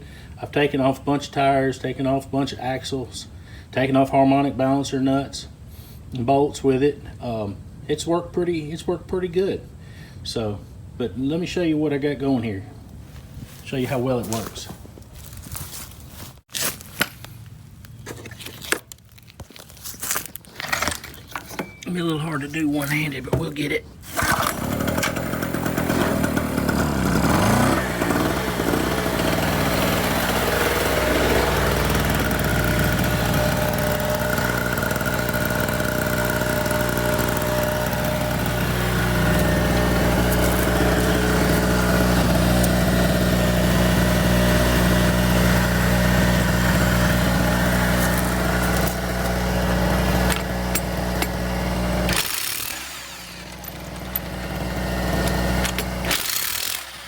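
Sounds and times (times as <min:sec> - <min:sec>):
gas generator running: 0:21.4 - 0:57.0.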